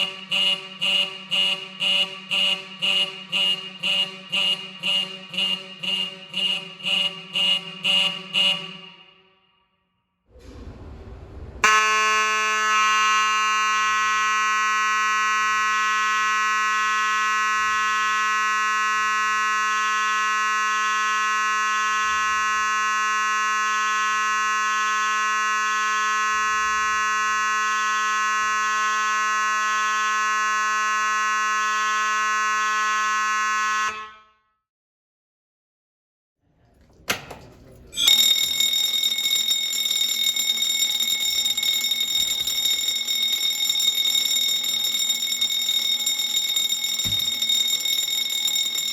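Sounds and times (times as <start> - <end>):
fire alarm horn buzzing: 0.0 - 9.8, 11.6 - 34.4, 37.1 - 48.9
low rumble: 10.3 - 11.7.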